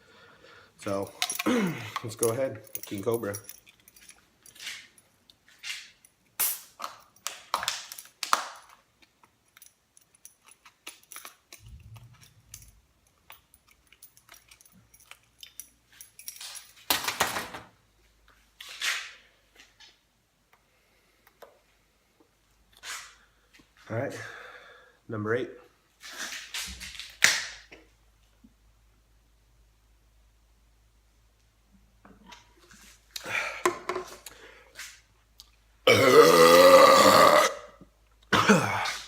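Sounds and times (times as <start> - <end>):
can opening bursts: 6.4 - 6.8
person drinking: 35.9 - 37.6.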